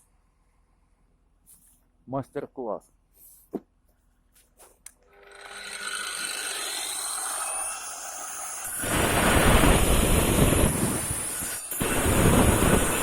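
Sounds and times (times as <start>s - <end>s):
angle grinder motor whine: 5.0s - 13.0s
grinder disc cutting brick: 5.0s - 13.0s.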